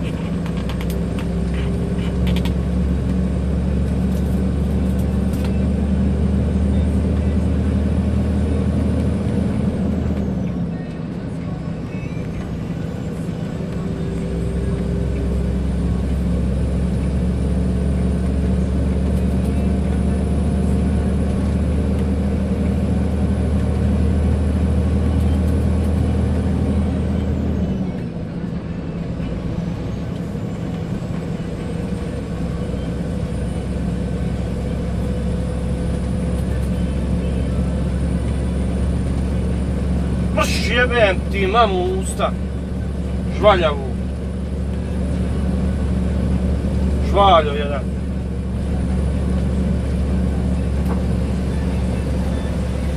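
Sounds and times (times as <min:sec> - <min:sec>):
diesel truck engine pulling: 0:00.0 - 0:52.9.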